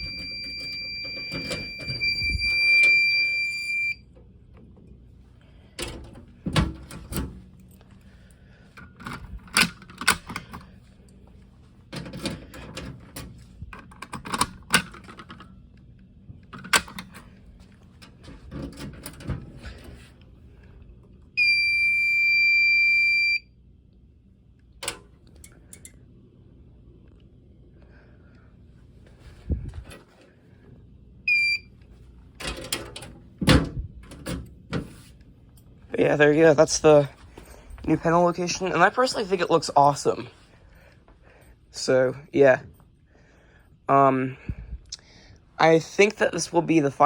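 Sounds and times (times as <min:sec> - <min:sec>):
high-pitched alarm buzzer: 0:00.0 - 0:04.0, 0:21.4 - 0:23.4.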